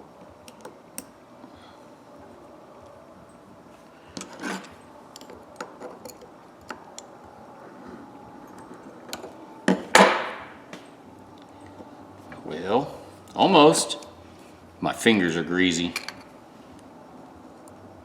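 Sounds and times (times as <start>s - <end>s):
metal scrape: 4.2s - 4.8s.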